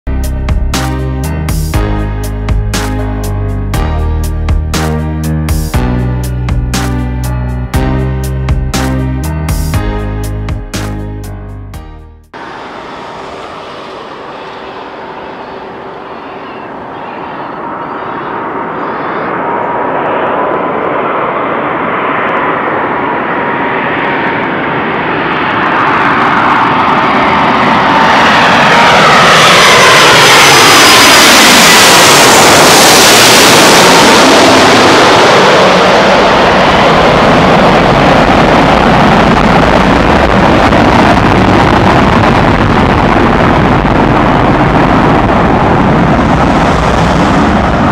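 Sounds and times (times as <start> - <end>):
jet engines passing by: 12.3 - 47.9.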